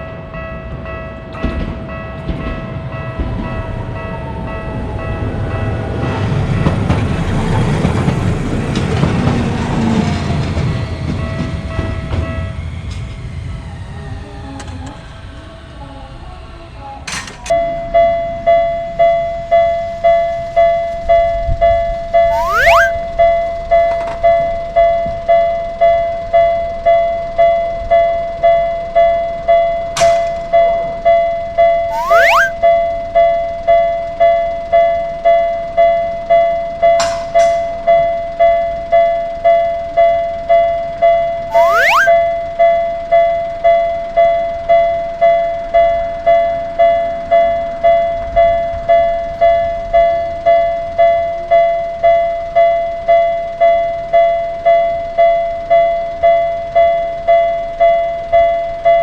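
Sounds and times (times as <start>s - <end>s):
short rising whistle sweep: 22.3s - 23.0s, 31.9s - 32.6s, 41.5s - 42.2s.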